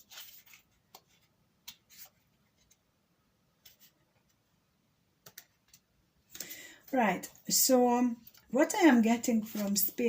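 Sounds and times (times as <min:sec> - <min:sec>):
cards rustling on a table: 0:00.0 - 0:02.8, 0:03.6 - 0:04.0, 0:08.2 - 0:08.5, 0:09.4 - 0:10.0.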